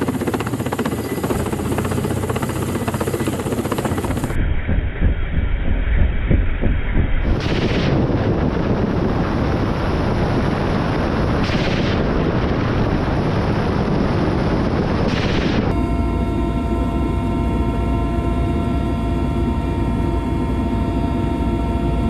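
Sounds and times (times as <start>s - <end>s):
rocket launch thumps: 4.3s - 9.4s
rushing roar of rocket fire: 7.2s - 15.8s.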